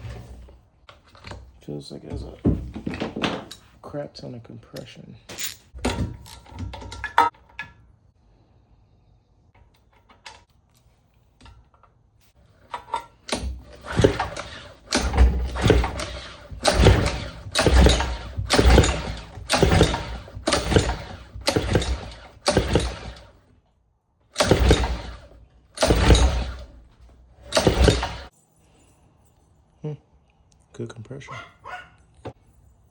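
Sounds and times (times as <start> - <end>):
recoil starter cord pulls: 12.6 - 23.4, 24.4 - 28.3.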